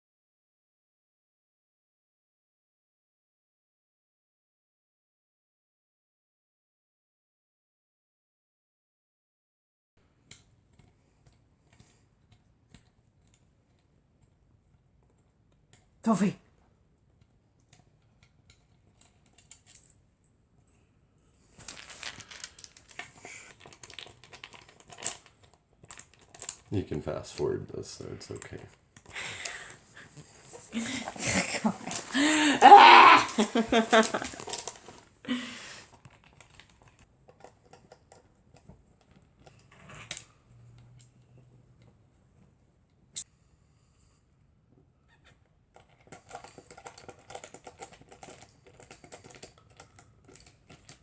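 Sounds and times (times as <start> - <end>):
scraping and rustling: 21.5 - 25.3.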